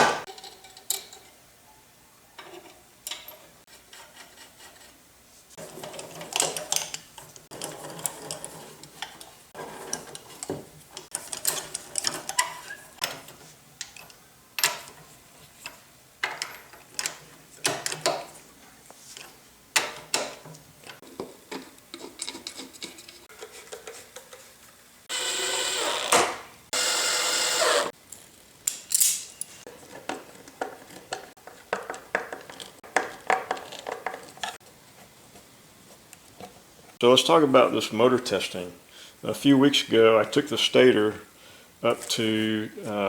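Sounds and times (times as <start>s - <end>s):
tools and metal parts clicking: 0.3s - 1.4s, 2.4s - 3.4s, 5.8s - 15.0s, 28.1s - 34.6s.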